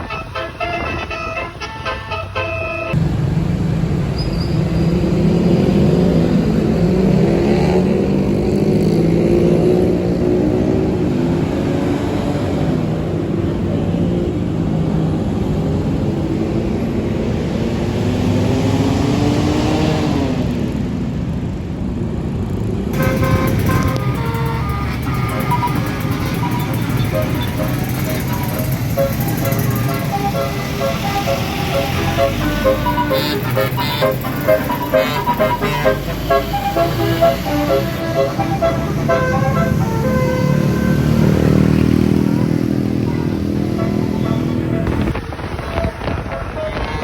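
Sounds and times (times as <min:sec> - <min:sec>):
bus horn playing a tune: 0:00.0 - 0:03.0, 0:23.0 - 0:42.4, 0:43.0 - 0:45.4
bus engine running: 0:00.0 - 0:47.0
higher held tones: 0:23.0 - 0:41.7.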